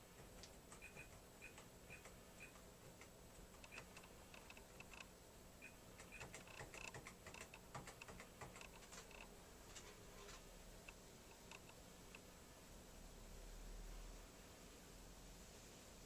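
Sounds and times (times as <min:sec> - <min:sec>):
keyboard key clicks: 0:06.0 - 0:09.2.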